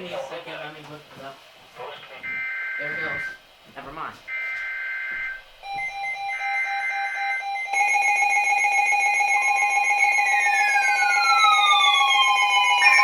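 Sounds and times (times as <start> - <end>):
weather radio alert tones: 2.2 - 3.4.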